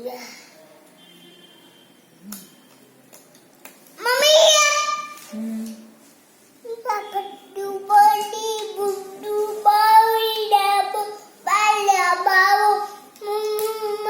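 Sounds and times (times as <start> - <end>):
toddler singing wordlessly: 4.0 - 5.3, 6.6 - 14.0.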